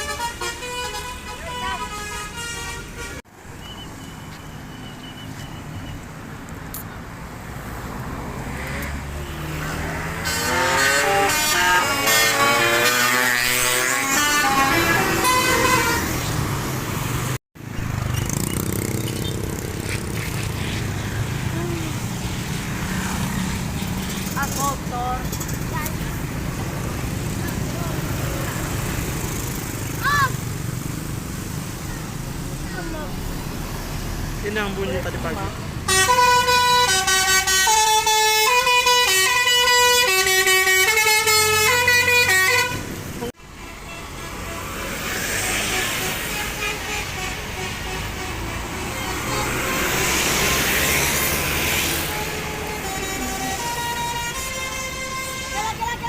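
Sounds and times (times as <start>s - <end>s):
bus horn playing melody: 0.0s - 3.3s, 10.1s - 16.3s, 35.8s - 44.8s, 45.4s - 56.0s
bus engine running: 10.2s - 43.4s.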